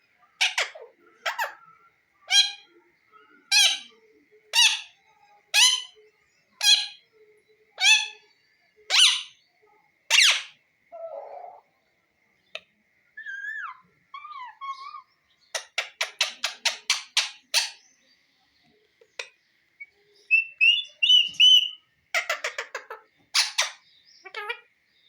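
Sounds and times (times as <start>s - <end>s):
parrot giving loud calls: 13.2s - 17.8s.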